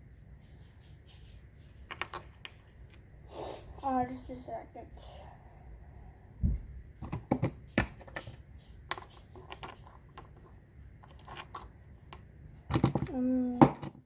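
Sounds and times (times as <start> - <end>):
lego pieces clicking and rustling: 7.0 - 14.0.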